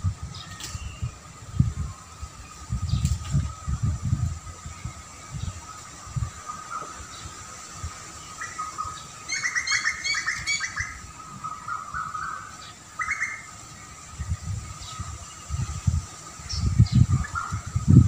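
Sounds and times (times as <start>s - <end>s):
songbird chirping: 0.1s - 18.0s.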